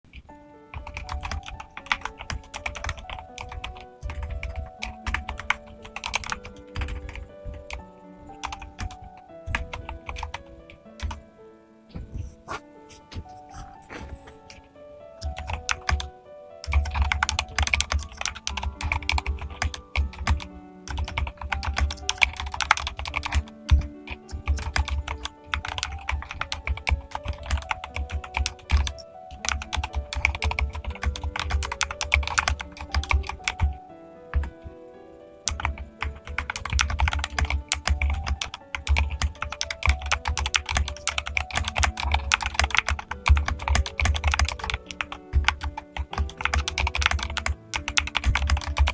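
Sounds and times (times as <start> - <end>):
mechanical keyboard typing: 0.1 - 11.2, 15.2 - 34.6, 35.4 - 48.9
background music: 0.1 - 48.9.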